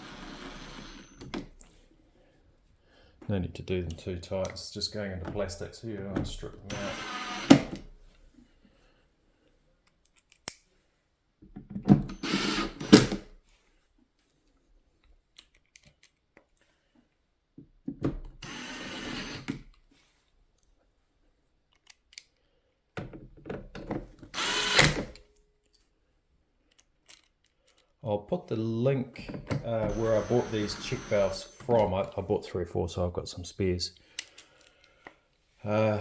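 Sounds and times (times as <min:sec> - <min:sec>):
power driver whirring: 0:00.0 - 0:01.5, 0:06.2 - 0:07.9, 0:12.0 - 0:13.3, 0:18.4 - 0:19.6, 0:24.3 - 0:25.2, 0:29.7 - 0:32.0.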